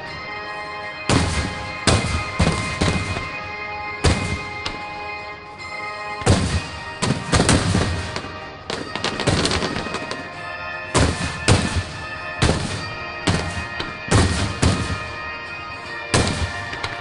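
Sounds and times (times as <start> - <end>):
music playing: 0.0 - 17.0
fireworks booming and crackling: 1.0 - 17.0.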